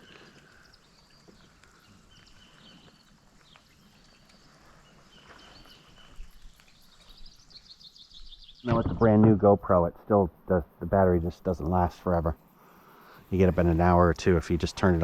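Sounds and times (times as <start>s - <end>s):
faint bird calls: 0.0s - 10.8s.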